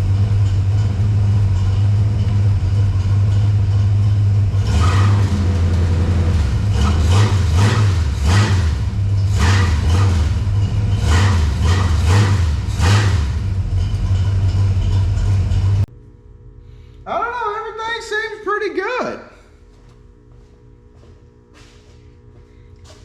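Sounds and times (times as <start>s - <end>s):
engine revving: 0.0s - 15.9s.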